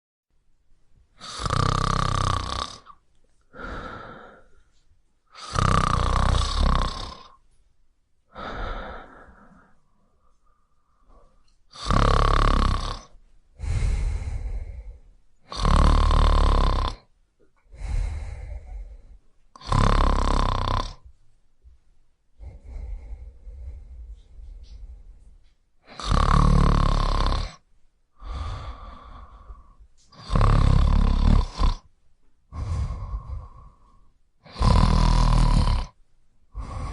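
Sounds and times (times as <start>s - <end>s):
quiet breathing: 1.0s - 7.7s, 8.3s - 36.9s
loud snoring: 1.2s - 3.0s, 5.3s - 7.4s, 11.7s - 17.1s, 19.6s - 21.0s, 25.8s - 27.6s, 28.2s - 31.9s, 32.5s - 36.9s.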